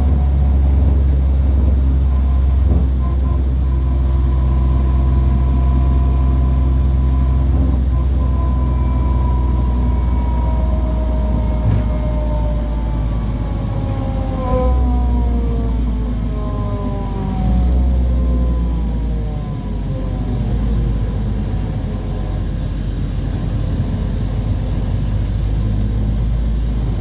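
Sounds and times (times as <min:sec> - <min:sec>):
bus engine drone: 0:00.0 - 0:27.0
lower whine: 0:00.0 - 0:27.0.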